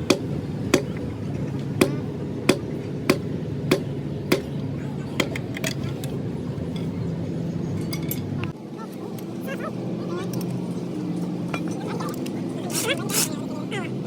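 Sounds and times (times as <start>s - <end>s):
low machine hum: 0.0s - 14.0s
hammer blows: 1.8s - 4.6s.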